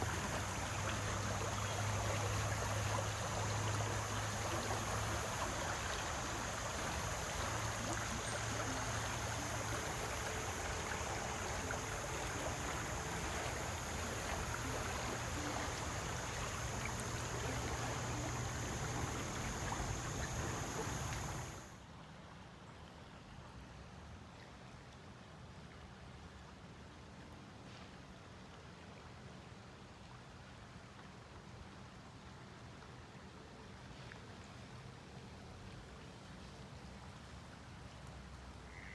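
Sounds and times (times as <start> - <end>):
high hiss: 0.0 - 21.7
water rushing: 0.0 - 21.7.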